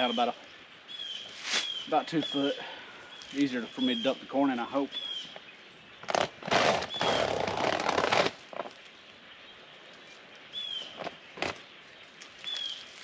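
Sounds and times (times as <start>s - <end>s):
bird chirping: 0.0s - 7.7s, 8.5s - 13.0s.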